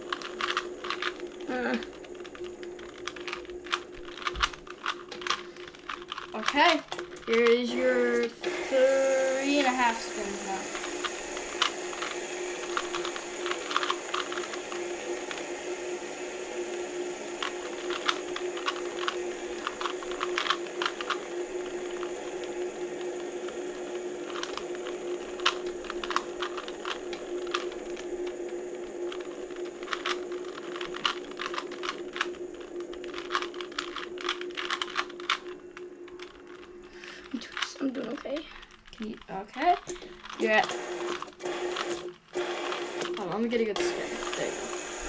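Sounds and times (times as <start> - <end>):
puzzle cube plastic clicking: 0.0 - 8.4, 9.1 - 44.9
steady hum: 0.0 - 45.0.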